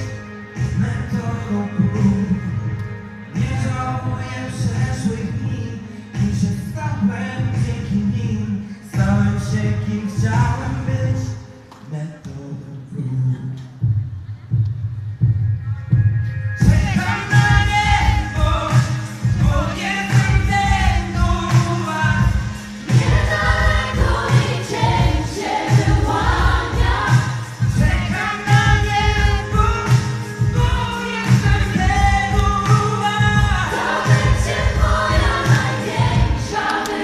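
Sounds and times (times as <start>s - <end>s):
band with pulsing bass beat: 0.0s - 11.4s, 13.7s - 37.0s
vocal group singing in harmony: 16.6s - 37.0s.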